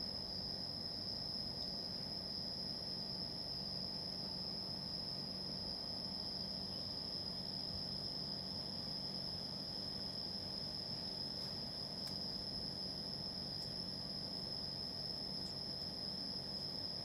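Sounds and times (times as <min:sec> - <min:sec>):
faint low hum and hiss: 0:05.0 - 0:17.0.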